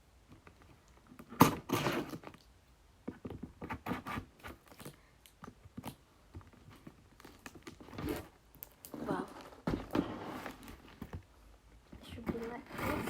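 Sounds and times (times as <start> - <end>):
scrapes and taps: 8.9 - 13.0.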